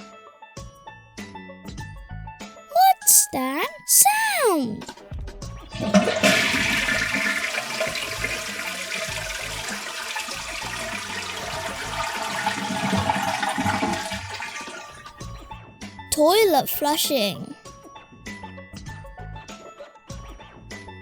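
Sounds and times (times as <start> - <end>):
toilet flushing: 5.7 - 15.4.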